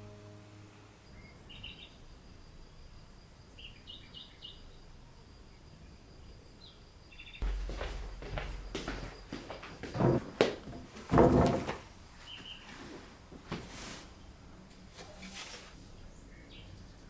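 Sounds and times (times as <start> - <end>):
faint bird chirps: 1.0 - 7.4
loud knock: 7.4 - 11.7.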